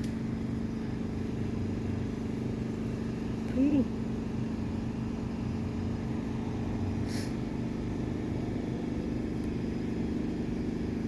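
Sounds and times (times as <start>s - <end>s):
steady motor hum: 0.0s - 11.0s.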